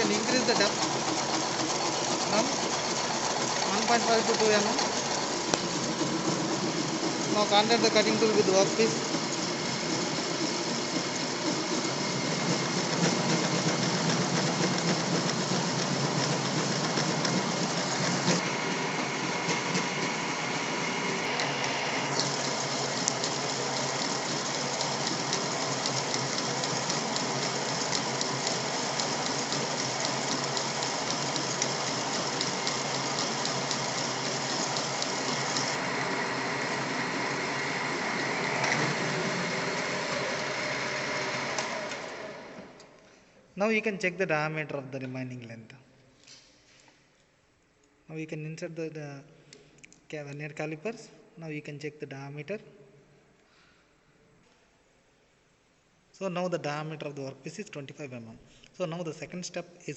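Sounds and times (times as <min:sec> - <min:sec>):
lathe running with fine ticking: 0:00.0 - 0:42.8.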